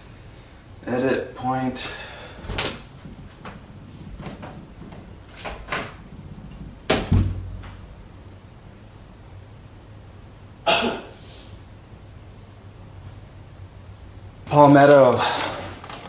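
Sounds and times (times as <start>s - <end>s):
low thud: 6.6s - 7.8s.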